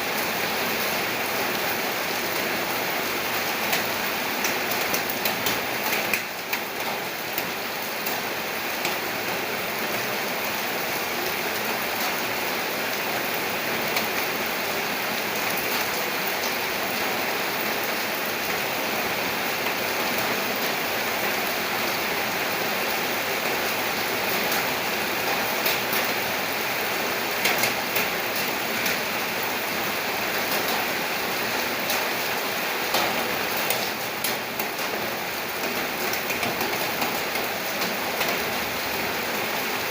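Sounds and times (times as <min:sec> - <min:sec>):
raindrops ticking on a surface: 0:03.6 - 0:10.0, 0:24.3 - 0:29.1, 0:32.9 - 0:38.7.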